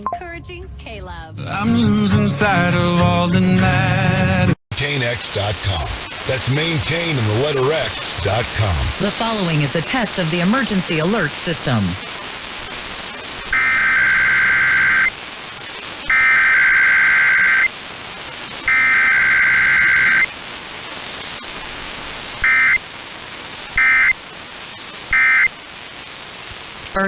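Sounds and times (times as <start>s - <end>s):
harsh buzzing data tones: 12.0s - 26.3s.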